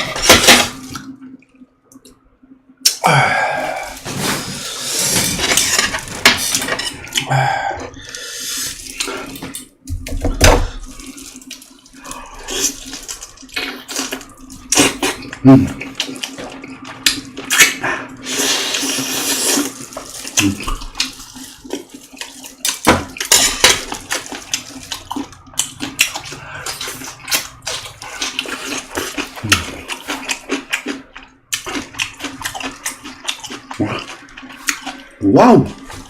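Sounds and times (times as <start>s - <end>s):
slurping: 2.8s - 9.7s, 10.8s - 36.0s
wet chewing: 10.8s - 36.0s.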